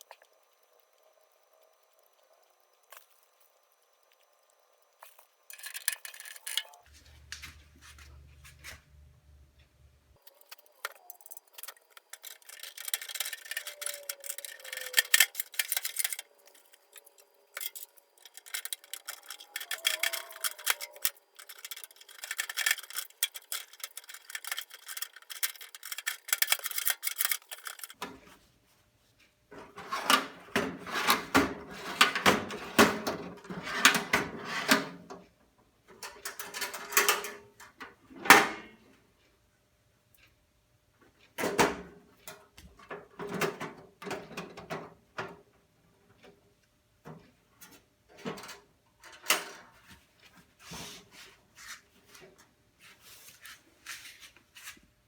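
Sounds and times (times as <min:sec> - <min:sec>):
metal box clattering: 0:05.5 - 0:06.8, 0:17.6 - 0:28.0
hand scrubbing metal toolbox: 0:12.1 - 0:28.0.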